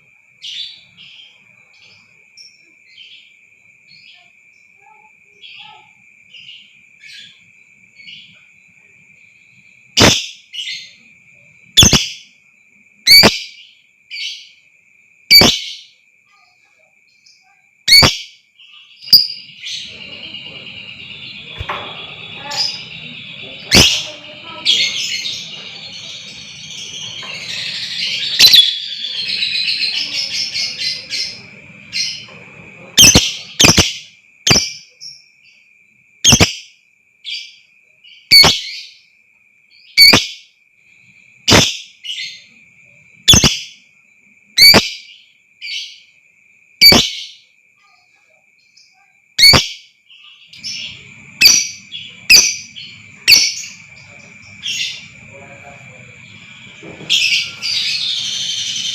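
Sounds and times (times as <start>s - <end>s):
high-pitched bird chatter: 3.9s - 8.4s, 10.0s - 11.1s, 11.8s - 12.4s, 13.1s - 14.6s, 15.3s - 35.2s, 36.2s - 36.7s, 37.3s - 39.0s, 39.8s - 40.5s, 41.4s - 42.6s, 43.2s - 43.8s, 44.6s - 46.1s, 46.8s - 58.9s.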